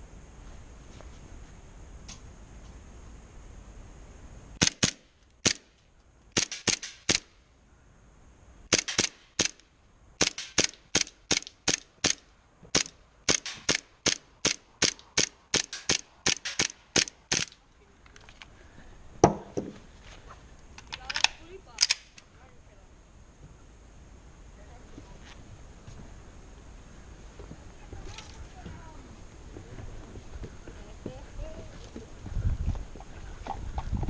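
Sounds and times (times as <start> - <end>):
airsoft gun shots: 4.6 - 5.7, 6.4 - 7.3, 8.7 - 9.6, 10.2 - 17.5
heavy thump: 19.2 - 19.8.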